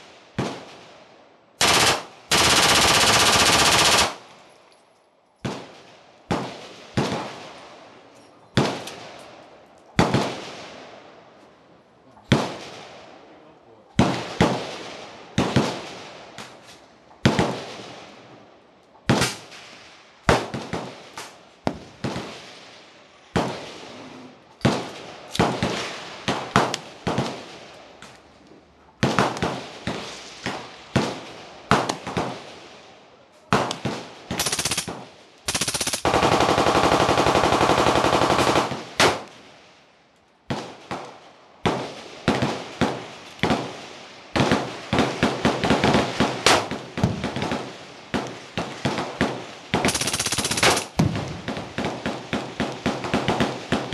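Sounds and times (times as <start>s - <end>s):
machine-gun fire: 1.6s - 4.2s, 33.6s - 39.3s, 48.6s - 53.9s.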